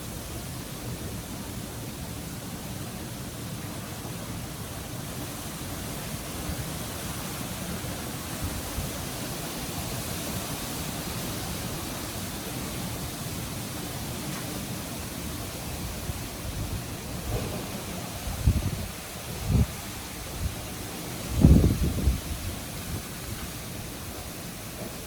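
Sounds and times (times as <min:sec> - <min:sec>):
wind through leaves: 0:00.0 - 0:25.0.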